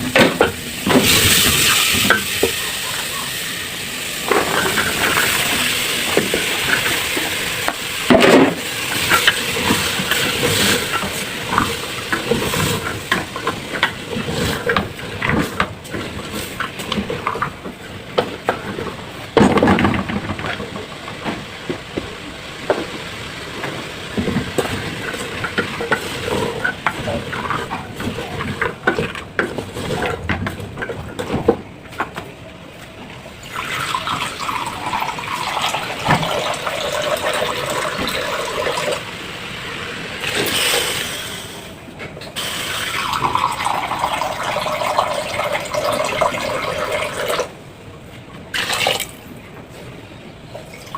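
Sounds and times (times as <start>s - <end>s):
soup sizzling in a pot: 0.4s - 17.5s, 42.4s - 47.3s.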